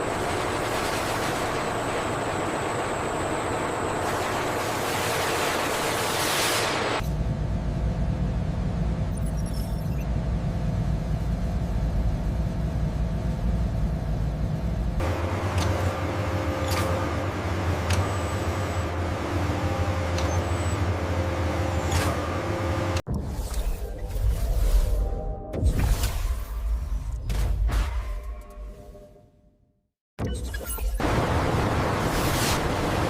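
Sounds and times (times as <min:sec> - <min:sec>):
low machine rumble: 0:07.0 - 0:16.6.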